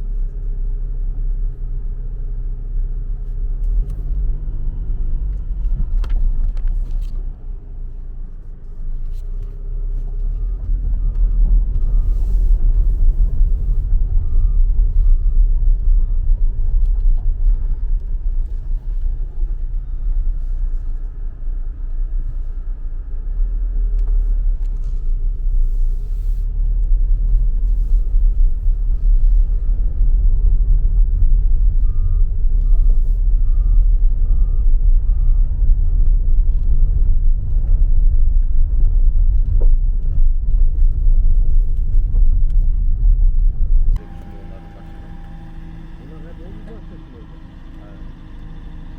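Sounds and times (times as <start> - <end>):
diesel engine low rumble: 0.0 - 48.9
faint beeping alarm: 44.0 - 48.9.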